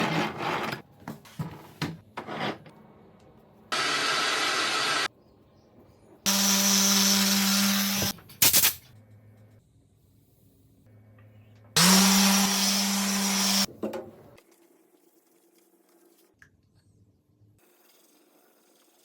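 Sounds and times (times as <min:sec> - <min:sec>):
power tool running: 0:03.7 - 0:05.1, 0:06.3 - 0:08.1, 0:11.8 - 0:13.7.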